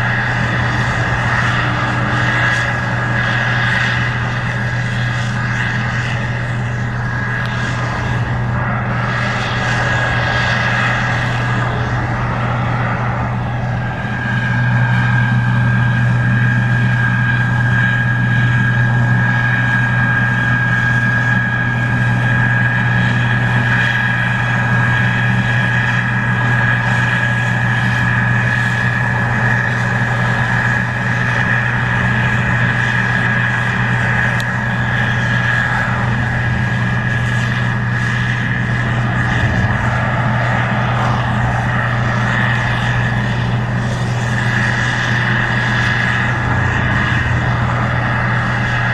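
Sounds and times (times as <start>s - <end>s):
combine engine drone: 0.0s - 48.9s
high whine: 0.0s - 48.9s.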